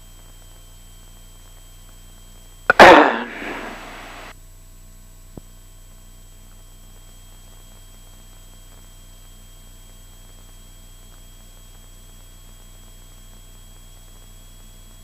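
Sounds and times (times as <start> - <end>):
radio clicks: 2.7 - 4.3
rushing radio noise: 2.7 - 4.3.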